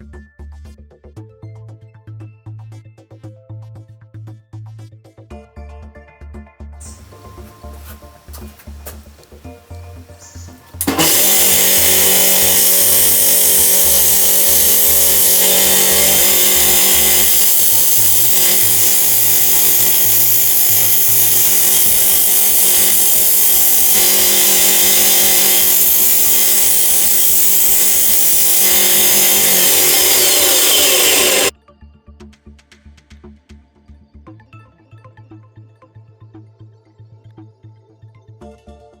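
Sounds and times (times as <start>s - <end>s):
electric power tool running: 6.8s - 31.5s.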